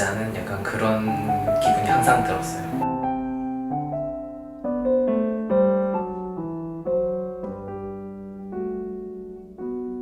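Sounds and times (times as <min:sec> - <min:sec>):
gentle piano melody: 0:00.0 - 0:10.0.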